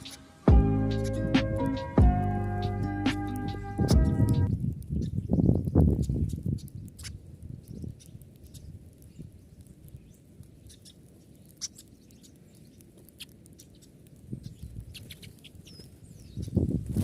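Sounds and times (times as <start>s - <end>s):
low rumble: 0.0s - 4.6s
faint bird chirps: 0.0s - 12.9s.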